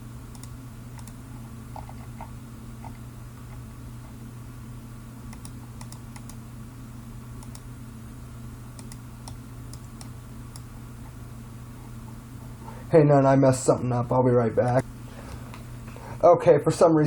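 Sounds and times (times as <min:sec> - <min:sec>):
low electrical hum: 0:00.0 - 0:17.0
computer mouse clicks: 0:00.3 - 0:01.2, 0:05.3 - 0:06.4, 0:07.4 - 0:07.7, 0:08.8 - 0:10.7.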